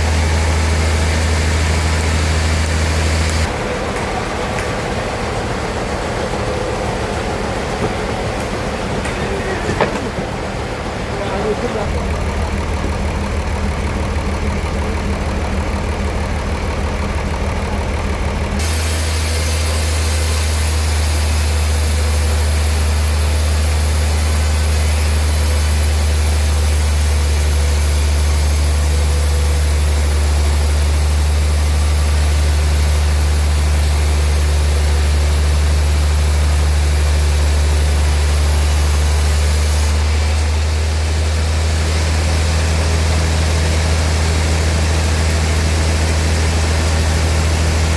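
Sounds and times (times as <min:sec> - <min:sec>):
sawmill machinery engine drone: 0:00.0 - 0:47.9
high hiss: 0:18.6 - 0:47.9.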